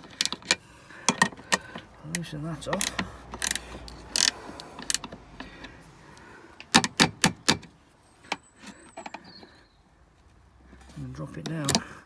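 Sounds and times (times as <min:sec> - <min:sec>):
spanner knocking on bolt: 0:00.0 - 0:05.2, 0:06.7 - 0:07.7, 0:11.3 - 0:11.9
spanner clicks: 0:00.0 - 0:07.7, 0:11.3 - 0:12.0.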